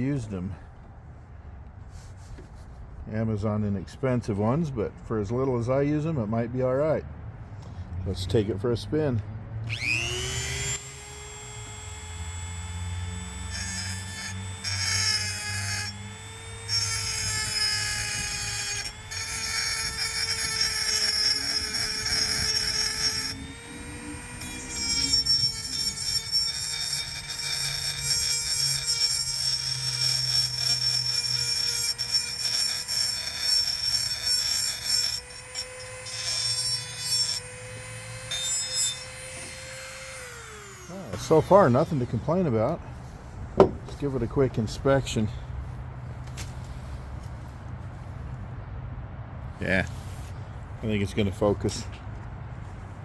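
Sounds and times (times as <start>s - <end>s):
rotary tool whine: 9.6s - 44.3s
burr grinding metal: 9.7s - 45.4s.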